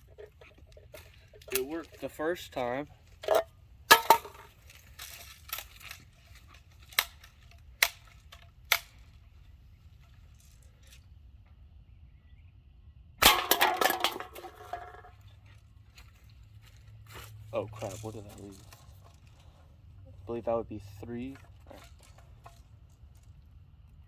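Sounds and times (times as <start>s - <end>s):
cans clattering over: 3.2s - 5.2s, 13.2s - 15.2s.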